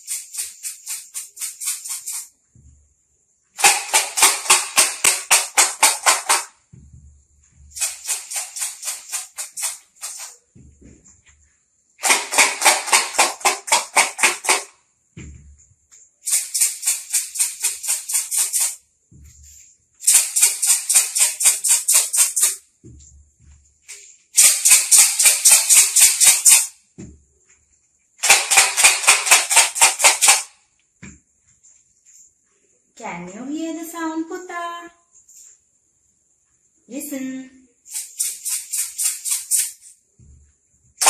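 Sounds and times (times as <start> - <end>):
bottles of dry materials rattling: 3.6 - 24.4.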